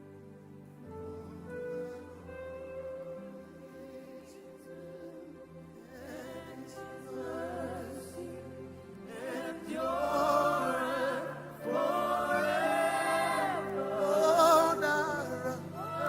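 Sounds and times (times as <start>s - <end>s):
sustained backing chords: 0.0s - 16.0s
choir singing gospel song: 3.4s - 16.0s.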